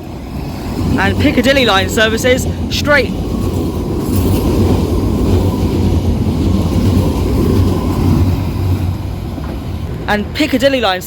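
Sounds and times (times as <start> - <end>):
train wheels rumbling on rails: 0.0 - 11.0.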